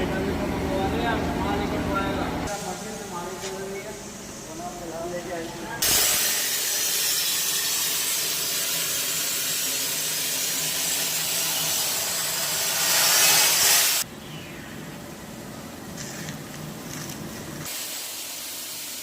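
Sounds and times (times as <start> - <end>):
cutting torch hissing: 5.8 - 14.1, 17.6 - 19.0.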